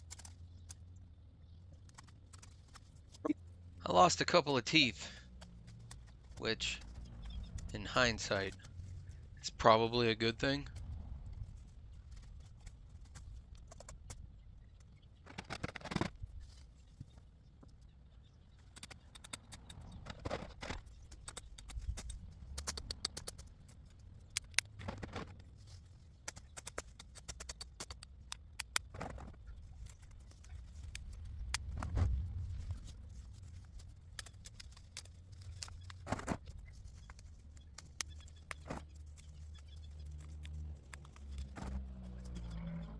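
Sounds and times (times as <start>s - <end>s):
branches clicking and snapping: 0.0s - 0.9s, 1.7s - 3.8s, 5.2s - 9.4s, 18.6s - 42.9s
leaves and twigs rustling: 28.0s - 42.9s.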